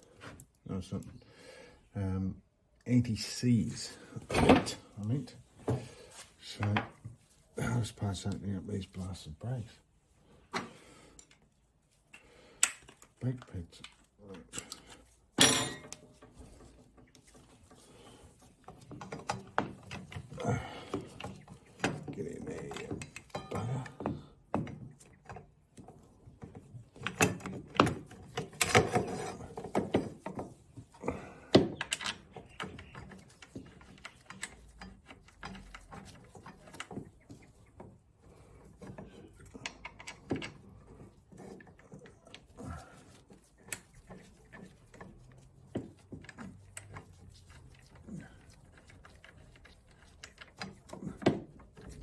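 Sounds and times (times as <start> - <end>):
metal parts and tools clicking: 13.8 - 16.6, 31.8 - 37.0, 38.7 - 40.8.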